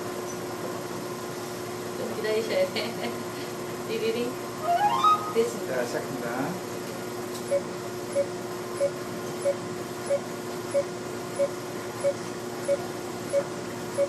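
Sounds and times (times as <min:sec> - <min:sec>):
steady machine hum: 0:00.0 - 0:14.0
laser beeping: 0:04.6 - 0:05.5.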